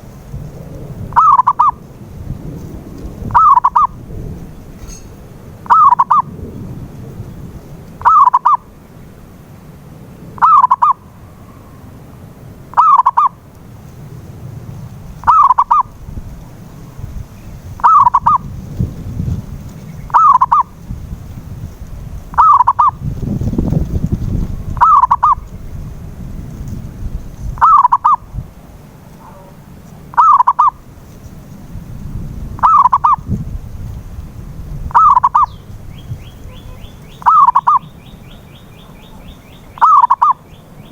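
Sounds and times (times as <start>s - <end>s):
low rumble: 0.0s - 9.2s, 13.4s - 30.2s
dove cooing: 0.9s - 1.9s, 3.0s - 5.0s, 5.6s - 6.4s, 8.0s - 8.7s, 10.4s - 11.8s, 12.7s - 13.4s, 15.2s - 16.0s, 17.7s - 18.5s, 19.7s - 20.7s, 22.3s - 23.1s, 24.7s - 25.6s, 27.5s - 28.4s, 29.1s - 30.8s, 32.6s - 33.3s, 34.9s - 35.6s, 36.3s - 40.4s.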